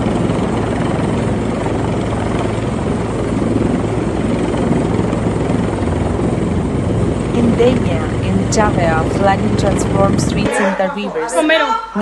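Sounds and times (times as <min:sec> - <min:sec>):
helicopter rotor chop: 0:00.0 - 0:11.0.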